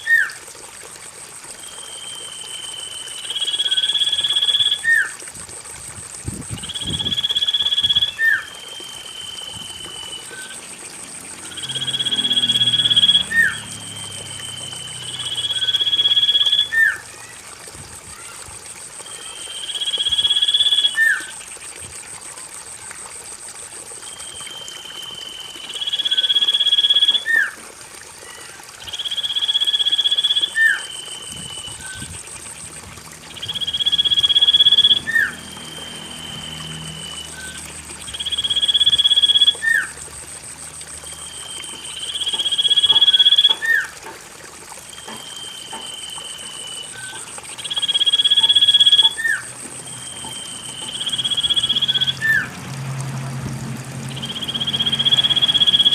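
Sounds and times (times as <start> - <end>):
bird whistle call: 11.5 - 17.1, 19.1 - 21.3, 28.2 - 32.1, 45.0 - 52.5.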